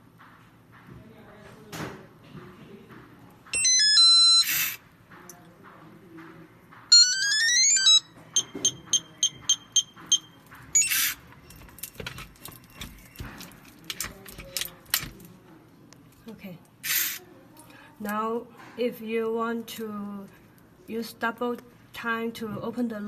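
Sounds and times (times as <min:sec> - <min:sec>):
electronic lock chime: 0:03.6 - 0:04.7, 0:06.9 - 0:11.2
short keypad beeps: 0:06.9 - 0:11.2
short bursts of hiss: 0:16.8 - 0:17.2.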